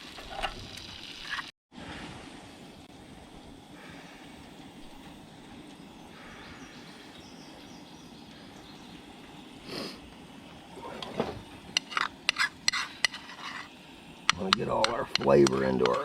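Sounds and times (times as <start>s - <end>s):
steady low hiss: 0.0s - 16.0s
utensil scraping a pan: 11.0s - 16.0s.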